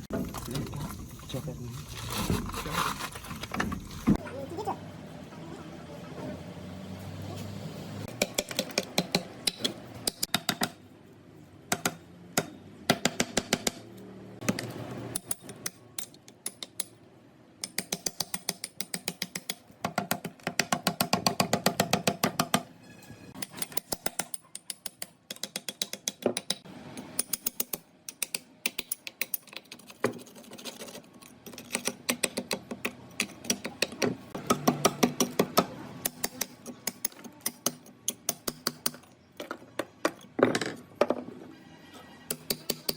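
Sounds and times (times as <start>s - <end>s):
hand tools tapping metal: 23.4s - 40.8s, 42.3s - 42.9s.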